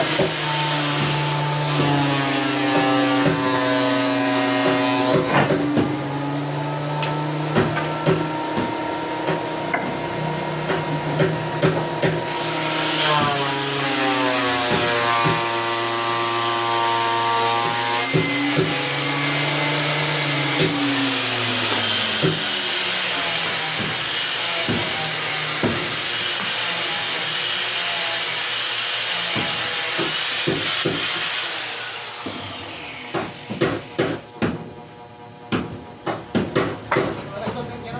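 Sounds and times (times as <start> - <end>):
electric power tool on wood: 0.0 - 34.3
knocks: 35.5 - 37.7.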